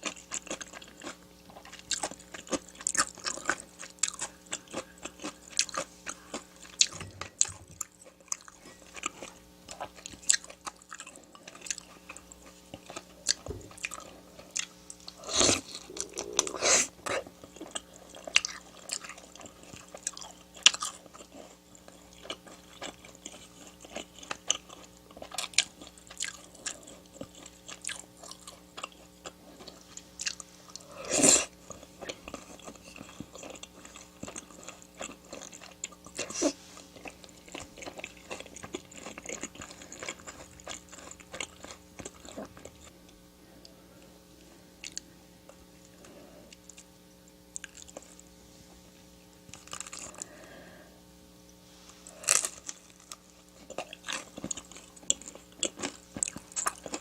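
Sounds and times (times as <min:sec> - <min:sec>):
chewing and crunching food: 0:00.0 - 0:57.0
wet mouth clicks: 0:15.8 - 0:16.9.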